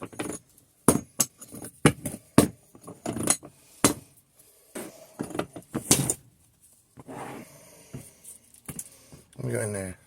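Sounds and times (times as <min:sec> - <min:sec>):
metal clinks and knocks: 0:00.0 - 0:04.0.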